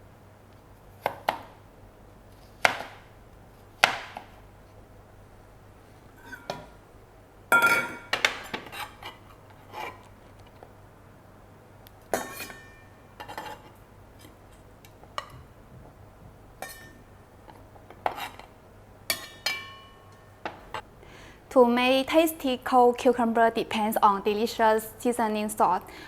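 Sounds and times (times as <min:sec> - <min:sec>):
dishes and utensils clinking: 0:07.5 - 0:09.2, 0:12.1 - 0:13.7, 0:16.6 - 0:17.0, 0:19.1 - 0:20.8.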